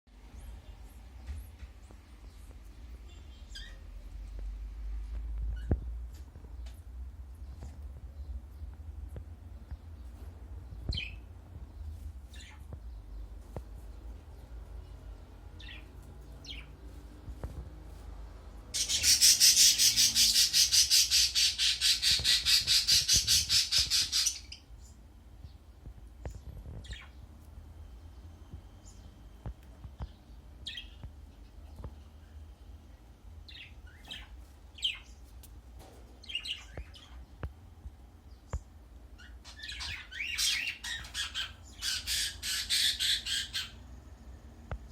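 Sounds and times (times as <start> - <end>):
budgerigar chirping: 18.8 - 24.6, 39.2 - 43.8.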